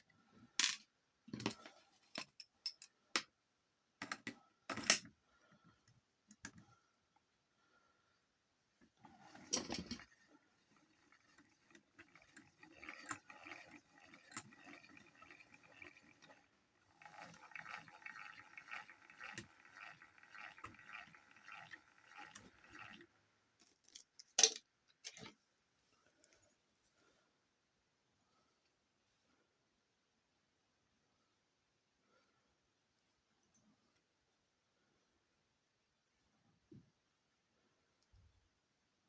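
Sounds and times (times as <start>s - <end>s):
metallic rattle: 9.0s - 23.0s
small motor whining: 9.0s - 23.1s.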